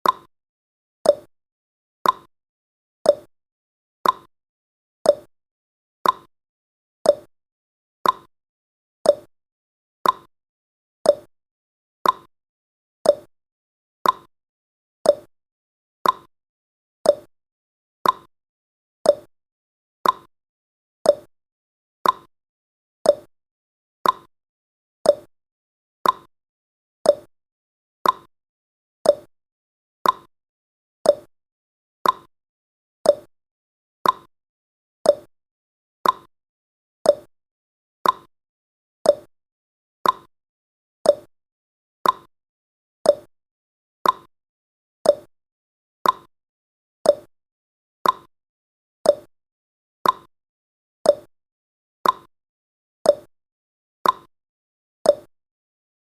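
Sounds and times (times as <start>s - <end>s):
timer tick-tock: 0.0s - 0.3s, 1.0s - 1.3s, 2.0s - 2.3s, 3.0s - 3.3s, 4.0s - 4.3s, 5.0s - 5.3s, 6.0s - 6.3s, 7.0s - 7.3s, 8.0s - 8.3s, 9.0s - 9.3s, 10.0s - 10.3s, 11.0s - 11.3s, 12.0s - 12.3s, 13.0s - 13.3s, 14.0s - 14.3s, 15.0s - 15.3s, 16.0s - 16.3s, 17.0s - 17.3s, 18.0s - 18.3s, 19.0s - 19.3s, 20.0s - 20.3s, 21.0s - 21.3s, 22.0s - 22.3s, 23.0s - 23.3s, 24.0s - 24.3s, 25.0s - 25.3s, 26.0s - 26.3s, 27.0s - 27.3s, 28.0s - 28.3s, 29.0s - 29.3s, 30.0s - 30.3s, 31.0s - 31.3s, 32.0s - 32.3s, 33.0s - 33.3s, 34.0s - 34.3s, 35.0s - 35.3s, 36.0s - 36.3s, 37.0s - 37.3s, 38.0s - 38.3s, 39.0s - 39.3s, 40.0s - 40.3s, 41.0s - 41.3s, 42.0s - 42.3s, 43.0s - 43.3s, 44.0s - 44.3s, 45.0s - 45.3s, 46.0s - 46.3s, 47.0s - 47.4s, 48.0s - 48.3s, 49.0s - 49.3s, 50.0s - 50.3s, 51.0s - 51.3s, 52.0s - 52.3s, 53.0s - 53.3s, 54.0s - 54.3s, 55.0s - 55.3s.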